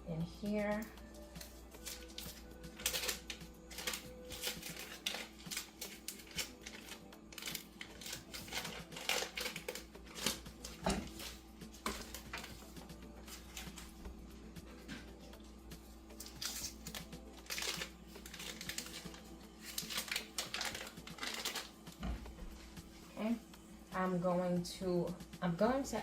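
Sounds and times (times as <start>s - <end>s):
melting butter crackling and popping: 1.9s - 13.9s, 16.2s - 22.4s.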